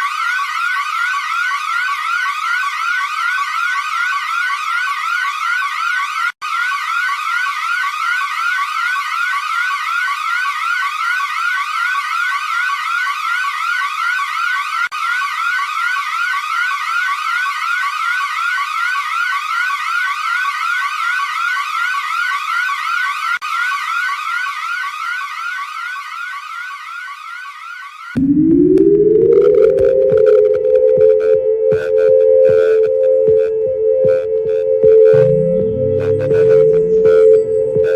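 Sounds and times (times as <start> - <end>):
electronic alert alarm tone: 28.2 - 37.9.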